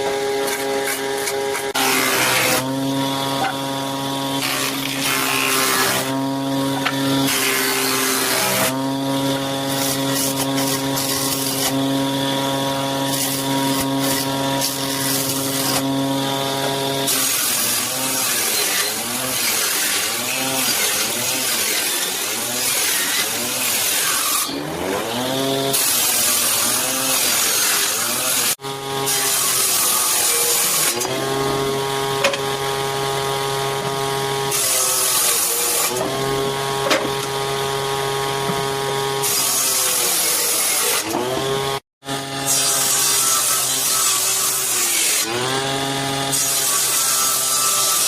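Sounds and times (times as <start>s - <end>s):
woodworking machine motor hum: 0.0s - 43.8s, 45.2s - 48.0s.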